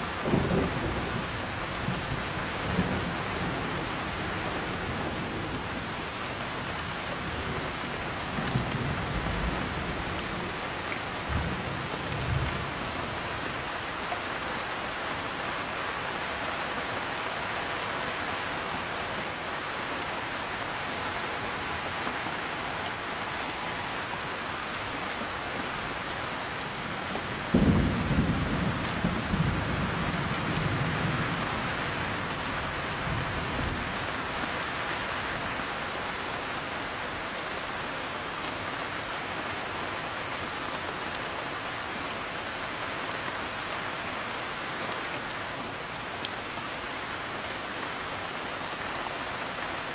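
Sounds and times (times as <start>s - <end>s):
heavy rain: 0.0s - 49.9s
rolling thunder: 27.5s - 31.4s.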